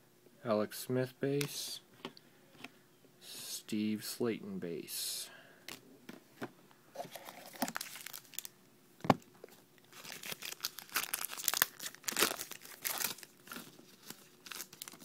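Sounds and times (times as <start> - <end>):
wrapper crinkling: 7.0 - 8.5, 9.8 - 15.0.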